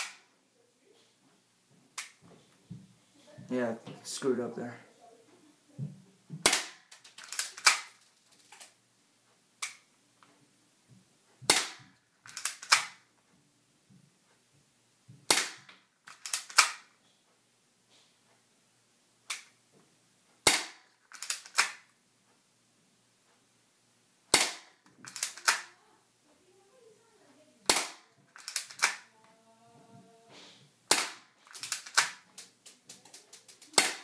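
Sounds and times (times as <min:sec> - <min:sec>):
airsoft pistol shots: 0:06.4 - 0:06.9, 0:11.5 - 0:11.9, 0:15.3 - 0:15.7, 0:20.4 - 0:20.9, 0:24.3 - 0:24.8, 0:27.7 - 0:28.0, 0:30.9 - 0:31.3, 0:33.8 - 0:34.0
pistol slide clicks: 0:06.5 - 0:07.9, 0:16.1 - 0:16.9, 0:20.5 - 0:21.8.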